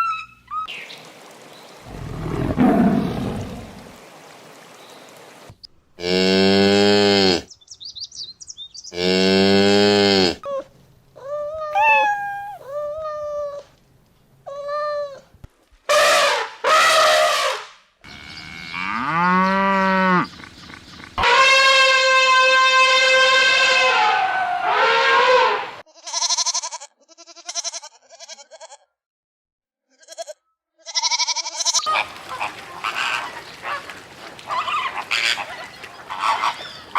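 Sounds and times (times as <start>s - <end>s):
cow mooing: 1.9s - 3.8s
harsh animal call bursts: 1.9s - 4.0s, 11.8s - 12.7s
rising and falling animal call: 1.9s - 4.0s, 11.7s - 12.7s
short high animal calls: 11.7s - 12.7s
long wavering animal call: 11.8s - 12.8s.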